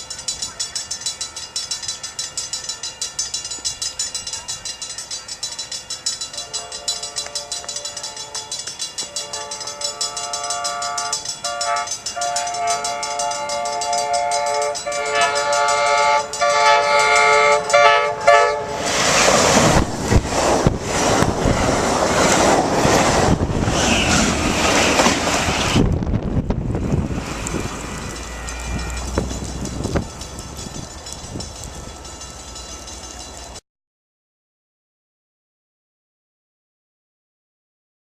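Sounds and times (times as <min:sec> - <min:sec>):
train wheels clattering on rails: 0:00.0 - 0:33.6
train air horn blasts: 0:06.3 - 0:18.9, 0:28.2 - 0:29.6.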